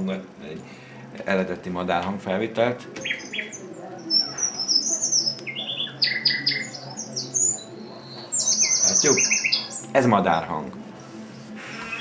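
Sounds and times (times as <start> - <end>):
songbird chirping and trilling: 2.9 - 10.4, 11.0 - 12.0.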